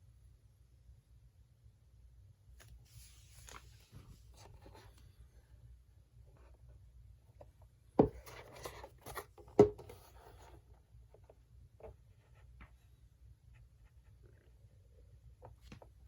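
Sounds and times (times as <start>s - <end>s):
rustling and rubbing: 2.6s - 5.3s.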